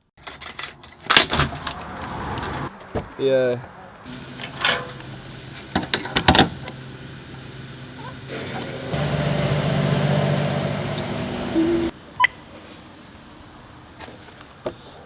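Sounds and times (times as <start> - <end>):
motor humming: 6.6 - 11.9.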